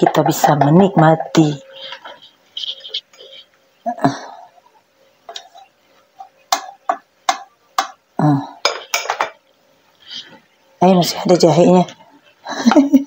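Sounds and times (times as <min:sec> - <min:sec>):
metal utensil clinking on pot: 0:08.6 - 0:09.4.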